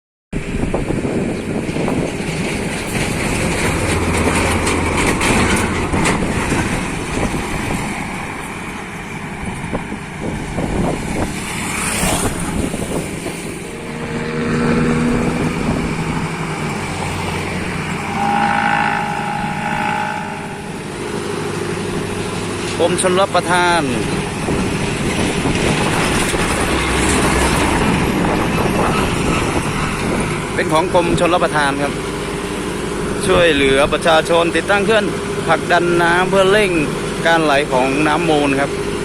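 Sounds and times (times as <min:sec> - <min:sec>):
engines running: 0:01.1 - 0:39.0
vehicle passing: 0:10.4 - 0:22.8
pitched engine note: 0:11.2 - 0:24.7.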